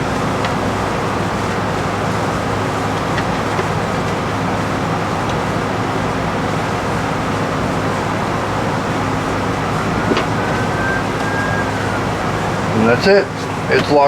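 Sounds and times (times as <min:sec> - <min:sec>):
steady background hum: 0:04.7 - 0:14.0.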